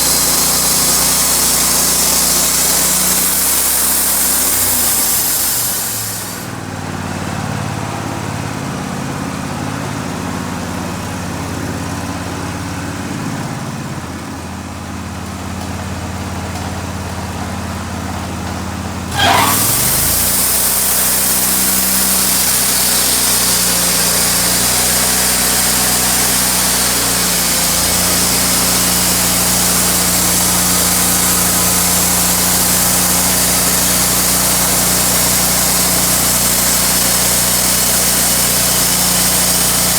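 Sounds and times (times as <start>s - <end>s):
saw blade squeal: 0.0s - 6.5s, 19.1s - 30.0s
saw blade cutting wood: 0.0s - 6.6s, 19.1s - 39.9s
sawmill engine running: 0.0s - 14.4s, 15.2s - 39.9s.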